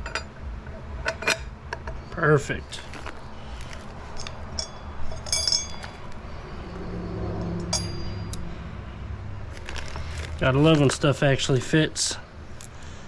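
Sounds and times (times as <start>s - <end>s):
metallic clinks of parts: 0.0s - 0.4s, 1.0s - 2.2s, 2.8s - 6.3s, 7.3s - 8.5s.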